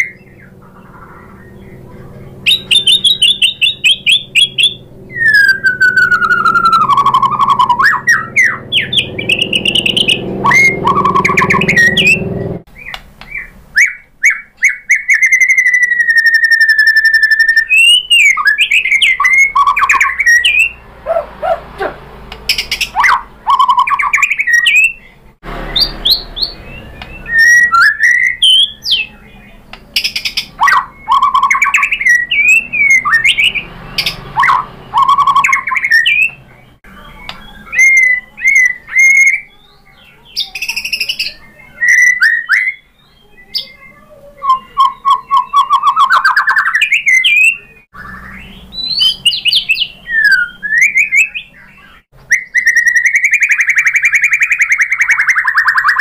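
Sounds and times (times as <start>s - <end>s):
bird singing whistled phrases: 0.0s - 20.8s, 22.5s - 56.0s.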